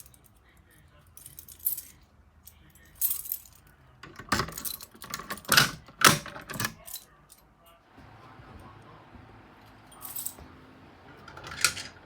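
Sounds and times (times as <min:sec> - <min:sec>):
small metal pieces jangling: 0:01.1 - 0:03.7.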